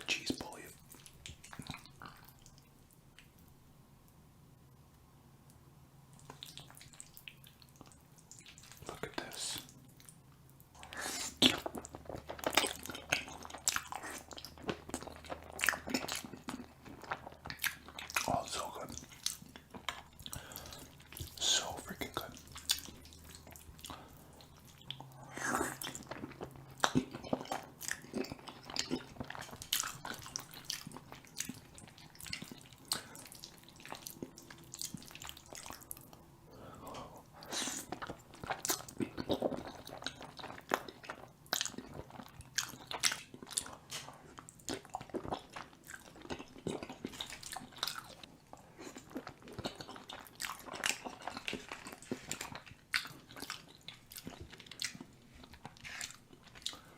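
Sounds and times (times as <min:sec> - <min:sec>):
person chewing and biting: 0:10.8 - 0:21.5, 0:22.3 - 0:36.1, 0:36.9 - 0:56.9.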